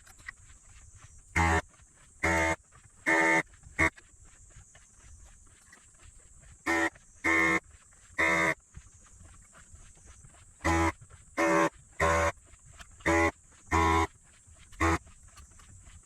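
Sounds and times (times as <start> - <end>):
multimeter continuity buzzer beeps: 1.4 - 1.6, 2.2 - 4.0, 6.6 - 7.6, 8.2 - 8.6, 10.6 - 12.3, 13.0 - 14.1, 14.8 - 15.0.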